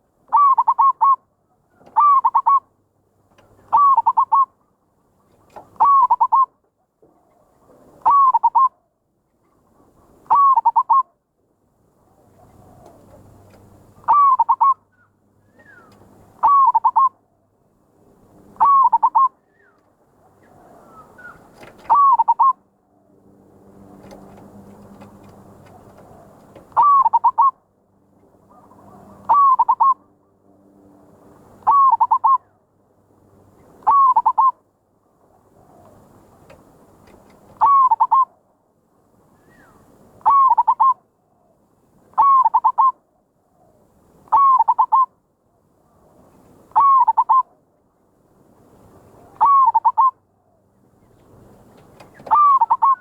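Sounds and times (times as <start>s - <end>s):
dove cooing: 0.3s - 2.7s, 3.6s - 4.5s, 5.4s - 6.5s, 7.7s - 8.7s, 10.3s - 11.0s, 12.4s - 14.8s, 15.5s - 17.2s, 18.6s - 19.8s, 20.4s - 22.6s, 23.9s - 27.5s, 28.5s - 30.0s, 31.6s - 32.5s, 33.8s - 34.6s, 37.5s - 38.4s, 39.5s - 41.0s, 42.2s - 42.9s, 44.3s - 45.1s, 46.8s - 47.5s, 49.2s - 50.2s, 51.8s - 53.0s.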